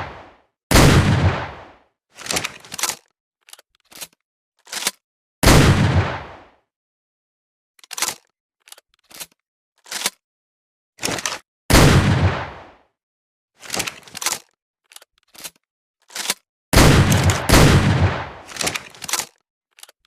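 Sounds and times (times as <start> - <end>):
shotgun shot: 0.0 - 1.7, 5.4 - 6.4, 11.7 - 12.6, 16.8 - 18.7
shotgun action clicks: 17.0 - 17.6.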